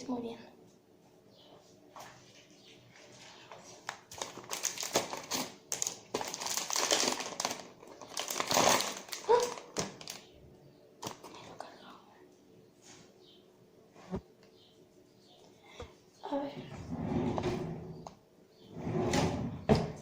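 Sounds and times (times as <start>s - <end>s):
packaging crinkling and rustling: 3.5s - 10.3s.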